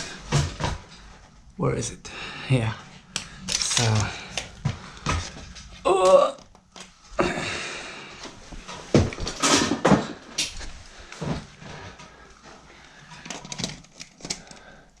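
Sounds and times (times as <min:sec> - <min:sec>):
tools knocking and clattering: 0:09.0 - 0:10.6.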